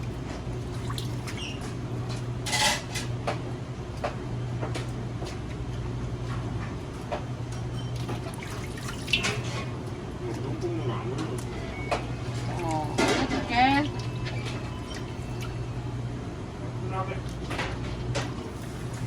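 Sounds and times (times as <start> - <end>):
food machine humming: 0.0 - 19.0.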